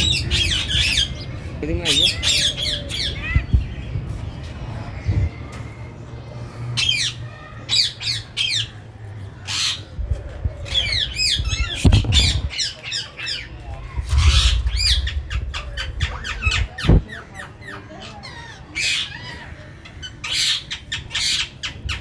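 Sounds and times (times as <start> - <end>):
birds squawking: 0.0 - 3.6.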